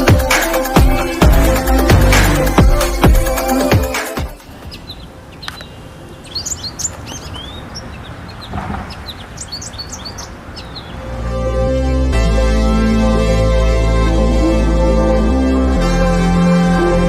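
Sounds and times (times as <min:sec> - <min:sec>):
music: 0:00.0 - 0:04.6, 0:11.0 - 0:17.0
steady outdoor hiss: 0:00.0 - 0:17.0
small birds chirping: 0:02.4 - 0:11.3.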